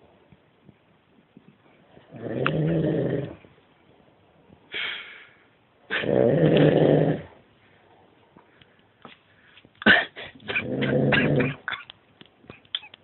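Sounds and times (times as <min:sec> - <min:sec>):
breathy out-breath: 0:04.7 - 0:05.5
man snoring heavily: 0:06.0 - 0:07.3, 0:10.6 - 0:11.6.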